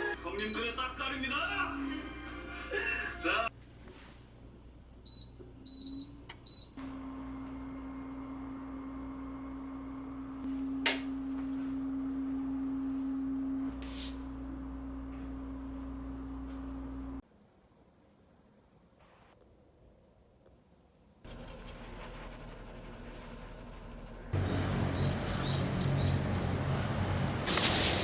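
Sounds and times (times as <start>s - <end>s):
short high electronic beeps: 0.4s - 0.6s
electric appliance humming: 4.6s - 17.2s, 23.9s - 28.0s.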